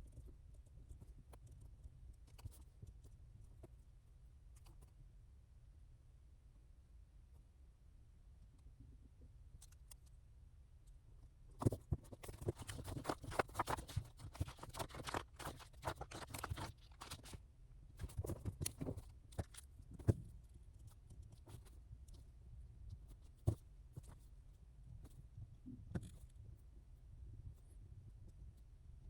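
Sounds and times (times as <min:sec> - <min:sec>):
small objects rustling and clicking: 0:11.6 - 0:17.4.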